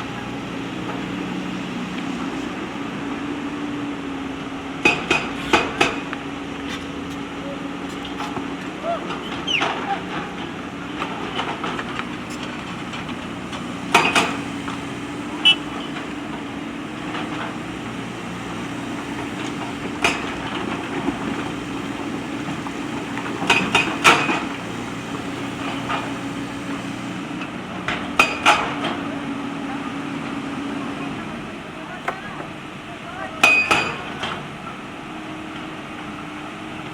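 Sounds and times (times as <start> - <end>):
backhoe diesel engine running: 0.0 - 36.9.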